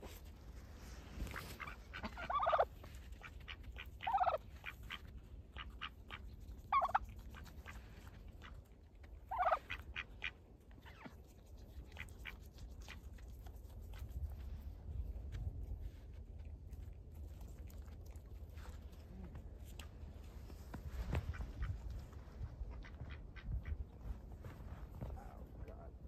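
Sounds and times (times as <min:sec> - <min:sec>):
poultry calling: 0:01.3 - 0:08.6, 0:09.3 - 0:11.1.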